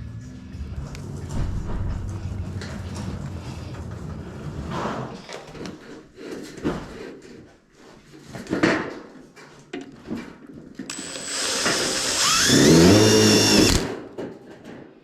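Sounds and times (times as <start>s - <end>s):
power drill driving a screw: 10.9s - 14.0s.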